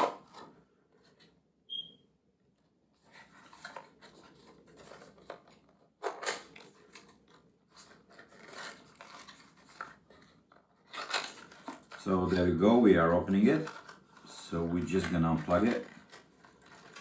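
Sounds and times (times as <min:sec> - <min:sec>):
packaging rustling: 0:03.1 - 0:17.0
packaging clicks: 0:08.1 - 0:12.5, 0:13.2 - 0:17.0.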